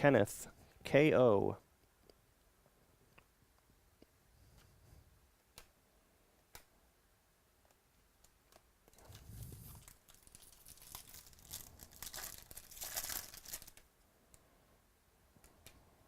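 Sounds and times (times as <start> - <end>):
foil wrapper tearing and crinkling: 9.7 - 13.8.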